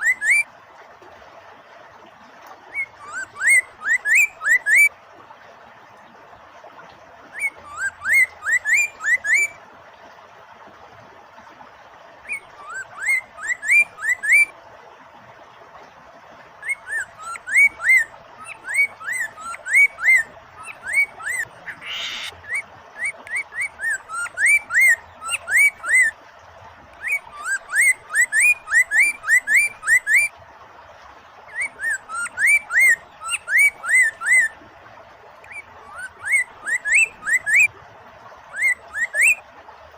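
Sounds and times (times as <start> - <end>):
flowing water rushing: 0.0 - 39.9
bird singing whistled notes: 2.7 - 4.9, 7.4 - 9.6, 12.3 - 14.5, 16.6 - 26.1, 27.0 - 30.3, 31.5 - 34.5, 35.5 - 37.7, 38.5 - 39.4
harsh bird rasp: 21.3 - 22.4.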